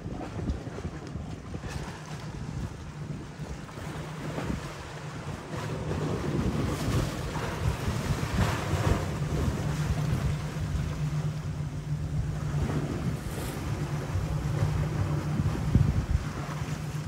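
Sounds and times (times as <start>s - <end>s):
steady low hum: 0.0s - 17.0s
wind buffeting microphone: 0.0s - 17.0s
rushing surf: 3.6s - 17.0s.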